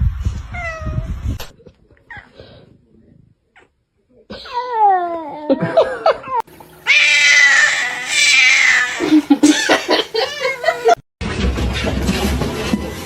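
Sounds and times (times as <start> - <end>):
cat meowing and yowling: 6.9 - 11.0.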